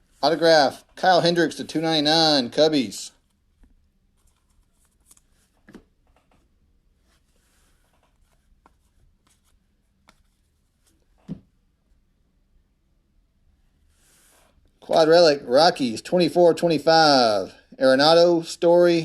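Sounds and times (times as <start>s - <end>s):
trading cards rustling: 4.0s - 6.5s.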